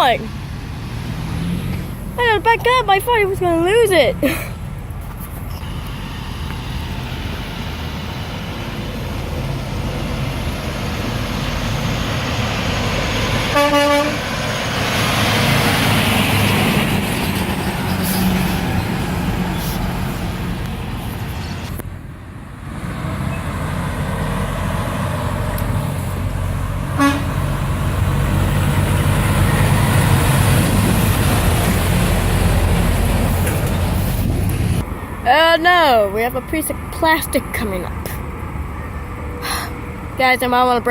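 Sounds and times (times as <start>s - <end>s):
heavy trucks passing: 0.0s - 40.9s
vehicle rushing past: 0.3s - 2.2s, 5.6s - 21.8s, 22.4s - 35.0s
truck horn toot: 13.5s - 14.2s, 26.9s - 27.5s.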